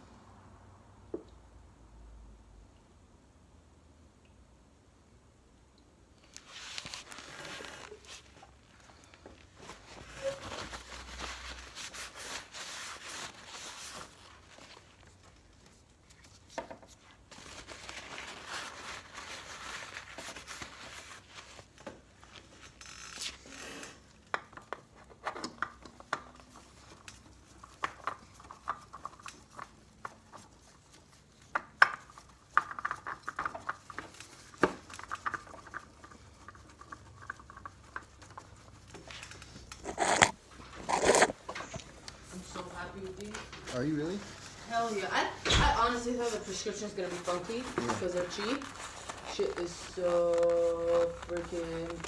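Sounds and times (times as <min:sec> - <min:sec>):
hands rubbing parts: 0:26.8 - 0:45.2, 0:46.1 - 0:52.0.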